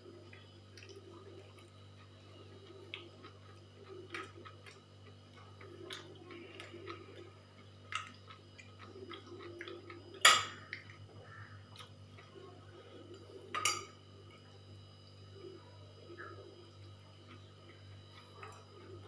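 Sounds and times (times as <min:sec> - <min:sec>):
dishes and cutlery clinking: 0:13.5 - 0:14.0.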